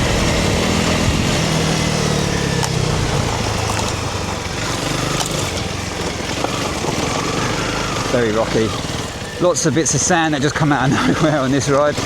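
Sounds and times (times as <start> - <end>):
motorcycle engine running: 0.0 - 12.0
wind and tyre noise: 0.0 - 12.0.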